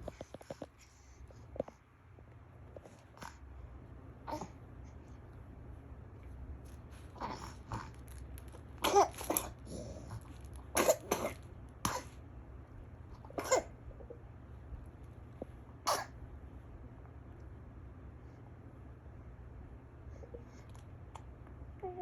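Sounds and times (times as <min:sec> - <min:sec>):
girl coughing: 0:10.8 - 0:12.1.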